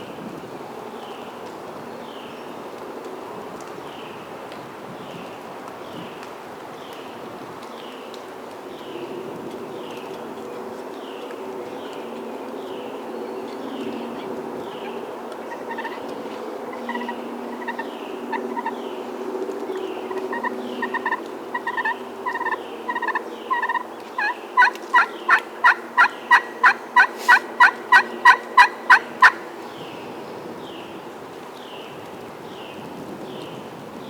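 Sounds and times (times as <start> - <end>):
wild turkey yelping: 15.5 - 16.1, 16.7 - 18.8, 20.0 - 29.5.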